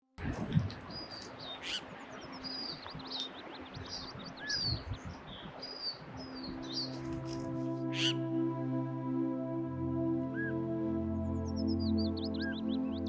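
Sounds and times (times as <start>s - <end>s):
birds chirping and whistling: 0.6s - 8.2s, 11.5s - 13.0s.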